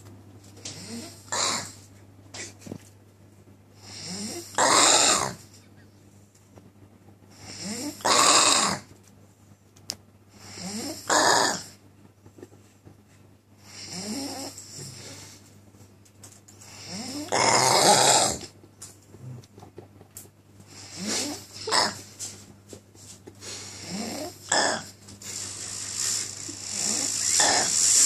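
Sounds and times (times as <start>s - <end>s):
loud snoring: 0.7s - 1.8s, 3.8s - 5.4s, 7.4s - 8.9s, 10.4s - 11.8s, 13.7s - 15.3s, 16.7s - 18.5s, 20.7s - 22.0s, 23.4s - 28.0s.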